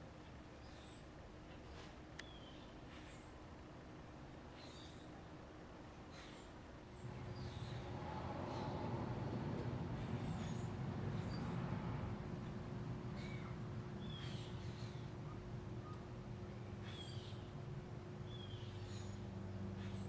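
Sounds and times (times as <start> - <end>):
low steady hum: 0.0 - 20.0
small birds chirping: 1.7 - 3.4, 4.5 - 5.2, 6.0 - 20.0
low rumble: 7.0 - 14.2.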